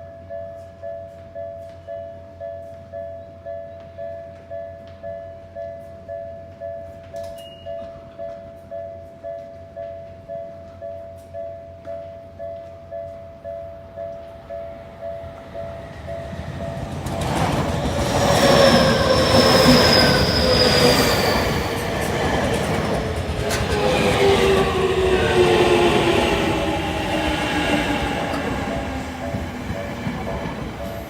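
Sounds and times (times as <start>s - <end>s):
crossing warning bell: 0.0s - 31.0s
electric train passing: 13.8s - 31.0s.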